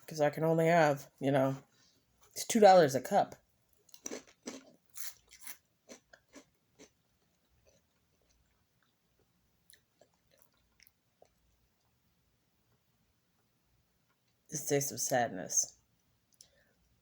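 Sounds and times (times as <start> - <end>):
person chewing crunchy cereal: 3.8 - 11.9.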